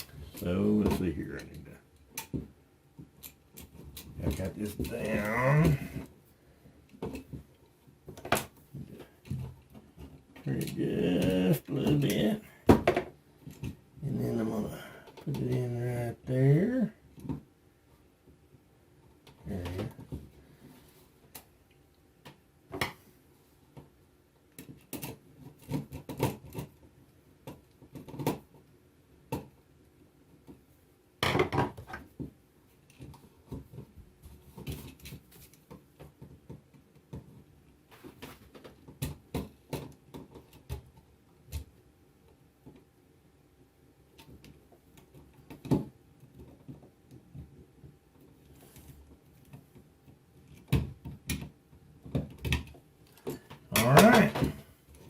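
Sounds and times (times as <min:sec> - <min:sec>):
handling noise: 0:44.1 - 0:55.0.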